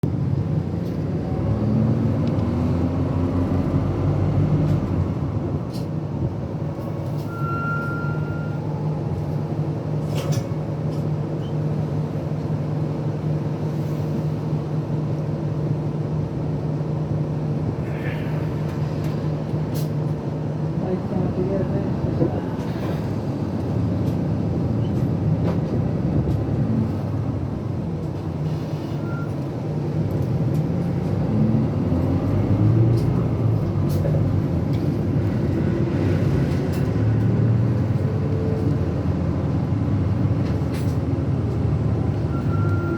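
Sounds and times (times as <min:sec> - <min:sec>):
bus engine humming: 0:00.0 - 0:42.9
short high beep: 0:07.3 - 0:08.6.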